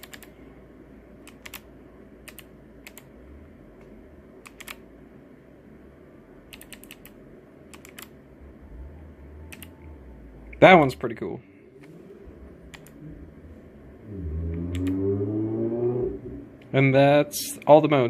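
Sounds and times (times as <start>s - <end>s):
mechanical keyboard clicks: 0.0s - 0.3s, 1.3s - 1.6s, 2.2s - 3.1s, 4.4s - 4.8s, 6.5s - 8.1s.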